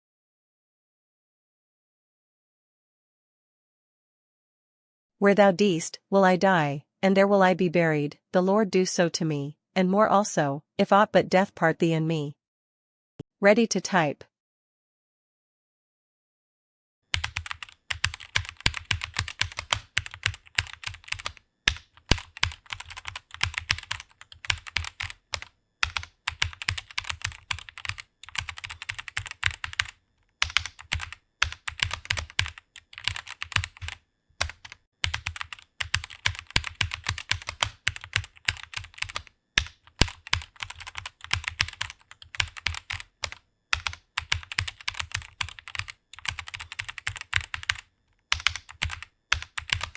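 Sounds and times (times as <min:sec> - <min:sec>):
fast typing on computer keyboard: 0:17.1 - 0:49.9.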